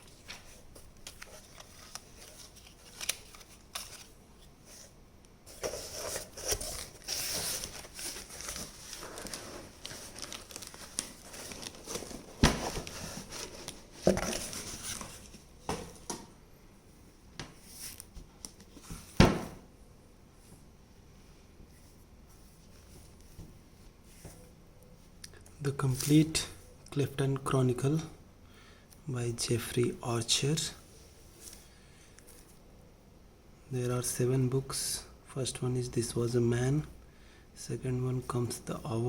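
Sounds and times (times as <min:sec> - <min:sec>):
packaging crinkling and tearing: 0:01.0 - 0:04.2, 0:05.8 - 0:15.1.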